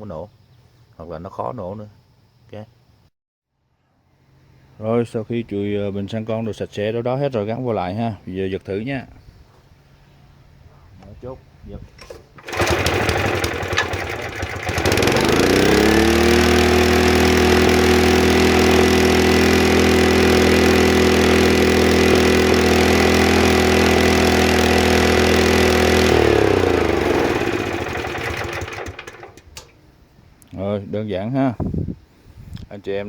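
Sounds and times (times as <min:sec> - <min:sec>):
small gasoline engine running: 0:12.4 - 0:29.7.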